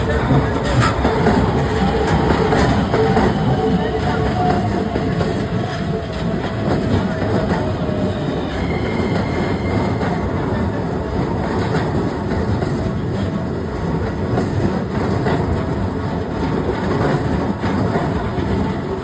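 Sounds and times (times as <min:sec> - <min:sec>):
train rail rumble: 0:00.0 - 0:19.0.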